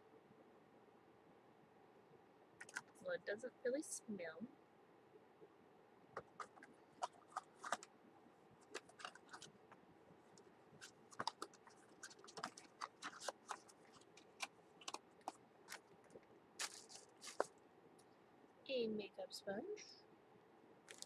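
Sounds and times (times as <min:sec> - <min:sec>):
packaging clicking and crackling: 0:02.6 - 0:03.0, 0:06.2 - 0:07.9, 0:08.6 - 0:09.6, 0:10.3 - 0:17.5.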